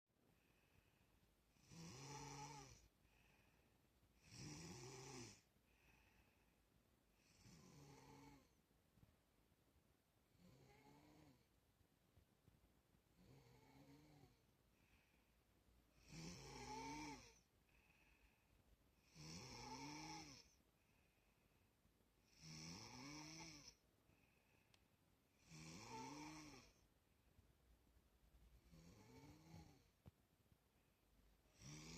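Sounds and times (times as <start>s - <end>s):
person snoring: 1.5s - 3.6s, 4.2s - 6.5s, 7.2s - 8.6s, 10.4s - 11.4s, 13.2s - 15.1s, 16.0s - 18.4s, 19.0s - 21.0s, 22.2s - 24.4s, 25.3s - 26.8s, 28.6s - 29.9s, 31.5s - 31.9s.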